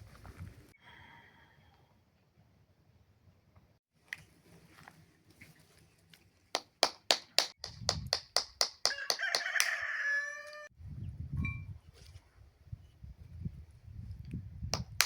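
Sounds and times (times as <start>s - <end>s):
sharp claps: 6.6s - 9.8s, 14.7s - 15.0s
rooster crowing: 8.9s - 10.7s.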